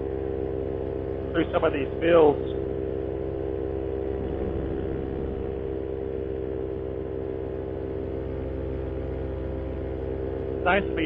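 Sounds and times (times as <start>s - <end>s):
paramotor engine and propeller drone: 0.0s - 11.0s.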